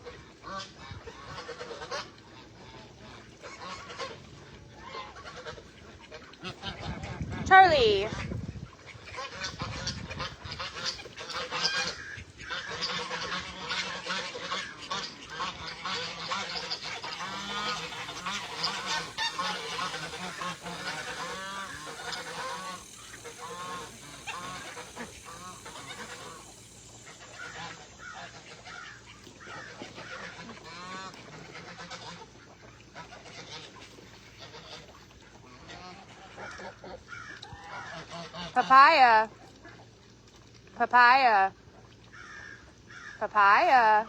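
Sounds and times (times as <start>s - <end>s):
ducks calling: 8.8s - 39.0s
geese honking: 9.1s - 35.0s.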